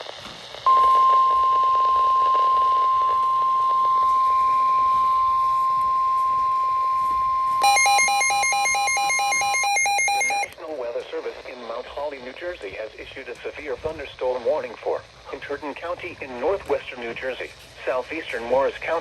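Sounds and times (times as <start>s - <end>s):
faint radio hiss: 0.0s - 19.0s
buzzy two-pitch electronic alarm: 0.7s - 10.5s
steady warning beep: 0.7s - 10.5s.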